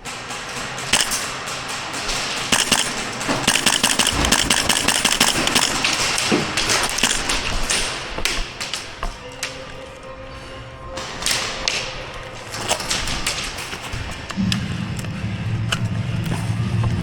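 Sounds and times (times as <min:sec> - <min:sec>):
airsoft gunfire: 0:00.8 - 0:09.5.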